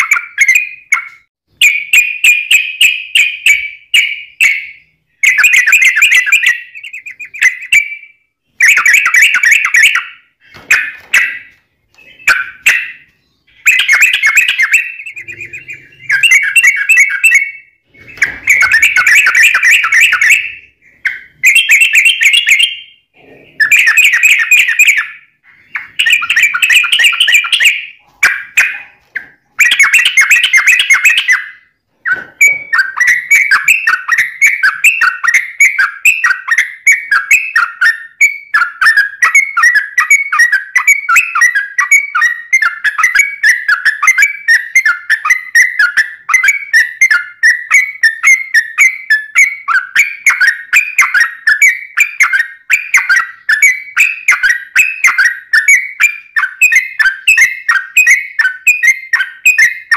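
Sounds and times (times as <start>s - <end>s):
bird chattering song: 0.0s - 59.9s.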